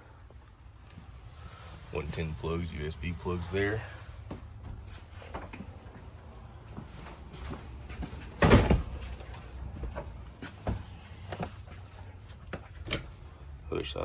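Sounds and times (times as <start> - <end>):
closet door sliding and bumping: 7.9 - 11.5.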